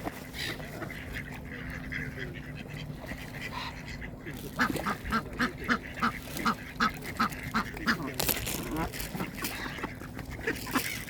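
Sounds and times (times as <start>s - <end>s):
duck quacking: 0.1s - 11.0s.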